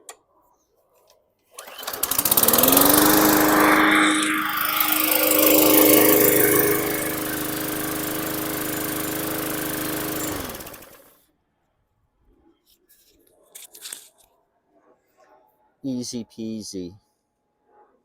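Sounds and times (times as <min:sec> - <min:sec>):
lawn mower engine running: 0:01.6 - 0:11.1.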